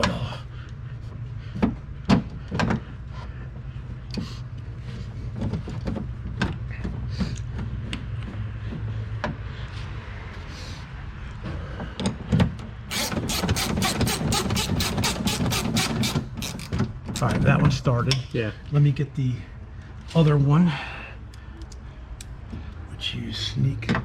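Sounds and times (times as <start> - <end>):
ratchet wrench clicking: 12.9 - 17.4.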